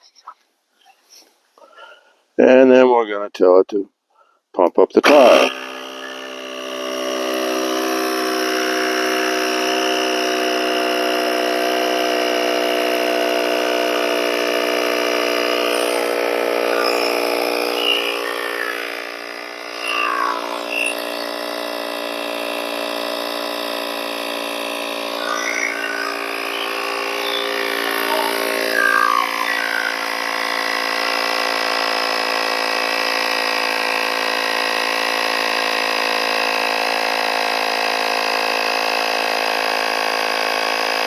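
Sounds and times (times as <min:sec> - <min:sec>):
tire inflator motor buzzing: 0:05.0 - 0:41.0.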